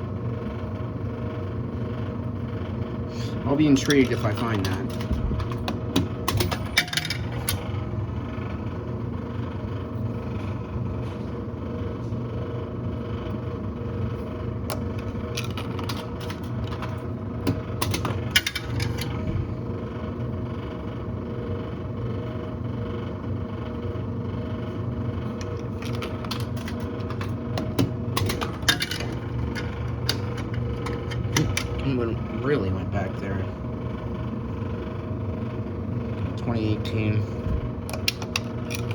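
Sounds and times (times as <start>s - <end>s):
steady mechanical hum: 0.0s - 38.9s
coins clinking in vending machine: 3.5s - 7.8s, 14.7s - 19.2s, 25.4s - 32.3s, 37.9s - 38.9s.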